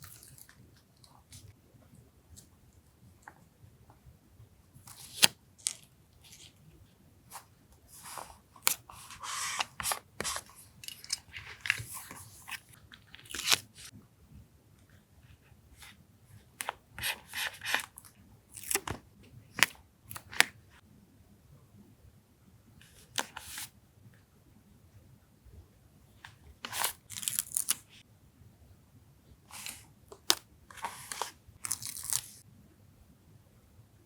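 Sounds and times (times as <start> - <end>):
paper rustling and tearing: 8.0 - 13.9, 29.5 - 32.4.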